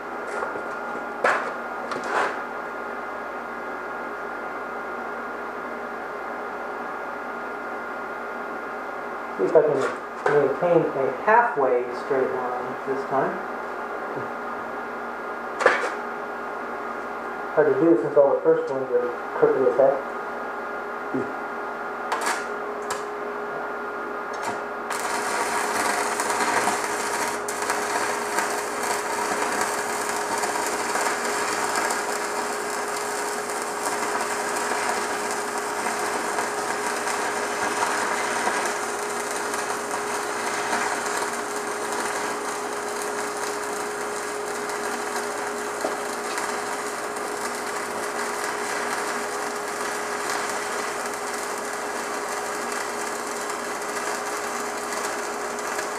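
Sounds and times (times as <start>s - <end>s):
welding rod scratching: 1.3s - 2.4s, 24.3s - 55.9s
welding arc crackling hiss: 22.1s - 23.1s, 24.3s - 55.9s.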